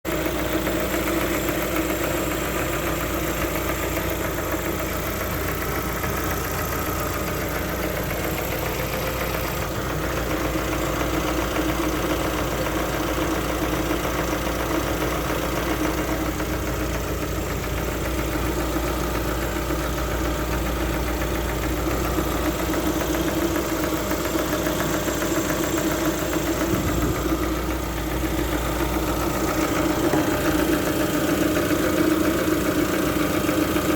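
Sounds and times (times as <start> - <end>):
engine knocking: 0.0 - 33.9
car engine idling: 0.1 - 33.9.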